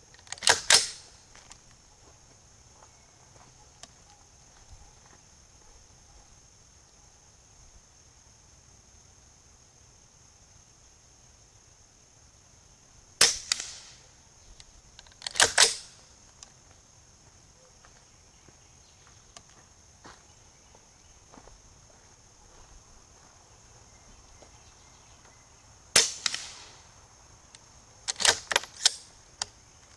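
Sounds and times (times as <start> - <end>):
suppressed rifle shots: 0.4 - 1.2, 13.2 - 14.0, 15.2 - 16.0, 26.0 - 26.8.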